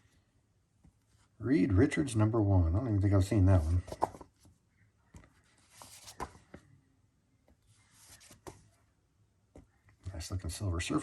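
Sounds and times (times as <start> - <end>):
comic books rustling and tapping: 3.4 - 6.7, 7.5 - 8.8
soft rubbing: 5.2 - 6.6, 7.6 - 8.8.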